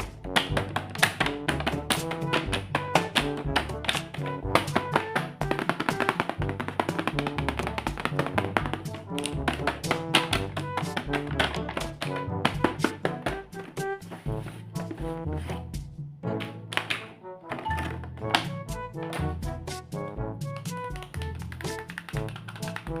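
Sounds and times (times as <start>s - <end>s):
fast clicking percussion beat: 0.0s - 13.4s, 20.6s - 23.0s
pop music with bass line: 0.0s - 14.0s.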